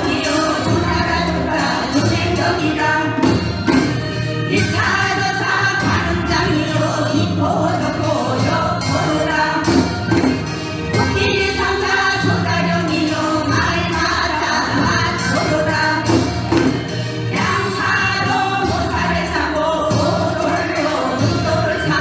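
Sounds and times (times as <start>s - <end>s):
drum strokes: 0.0s - 22.0s
instrumental accompaniment: 0.0s - 22.0s
person singing folk song: 0.0s - 22.0s.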